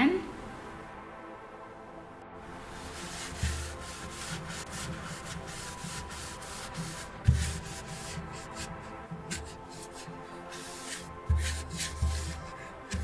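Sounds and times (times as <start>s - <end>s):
cloth wiping fridge interior: 2.5s - 13.0s.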